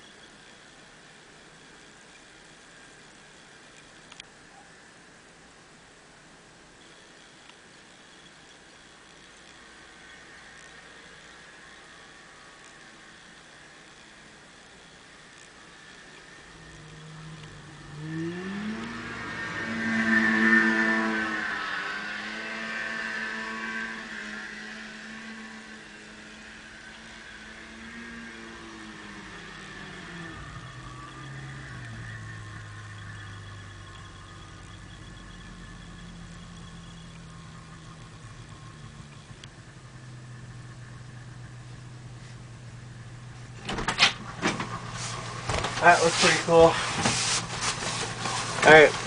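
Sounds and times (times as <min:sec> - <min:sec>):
snowmobile engine revving: 0:15.6 - 0:43.6, 0:44.3 - 0:49.0.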